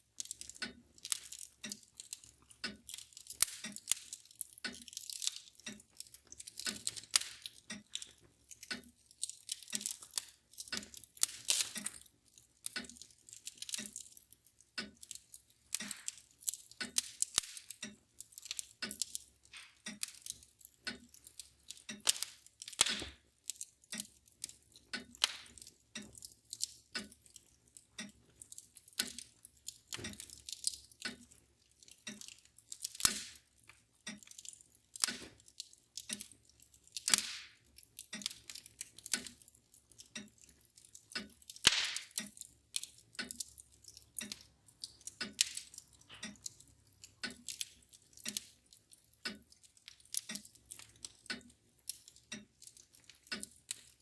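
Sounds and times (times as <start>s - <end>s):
mantel clock ticking: 0.0s - 54.0s
wood fire crackling: 0.0s - 54.0s.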